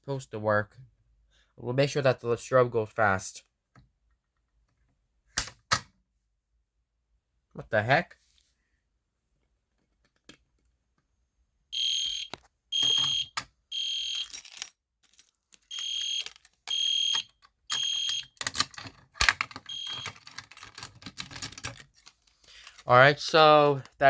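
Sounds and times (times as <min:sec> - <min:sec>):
clicking and rattling: 0:14.2 - 0:22.9.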